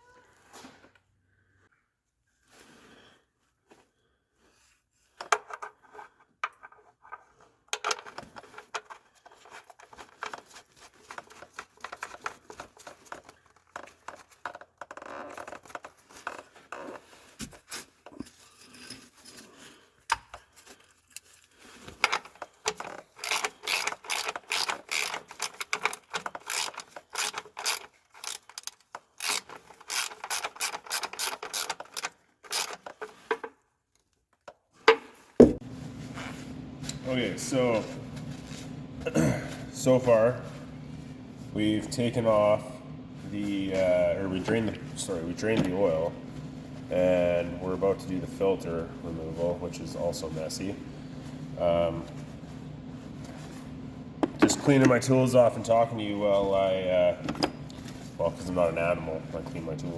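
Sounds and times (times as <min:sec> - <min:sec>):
ratchet wrench clicking: 0:23.2 - 0:32.7.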